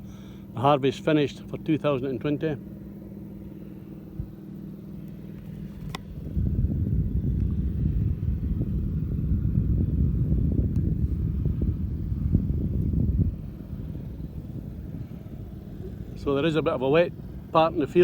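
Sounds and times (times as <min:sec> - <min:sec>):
tractor diesel engine running: 0:00.0 - 0:18.0
click: 0:05.4 - 0:06.1.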